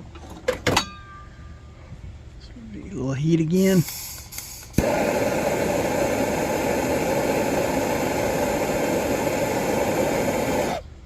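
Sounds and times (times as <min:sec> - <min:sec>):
gas torch hissing: 0:03.6 - 0:10.9.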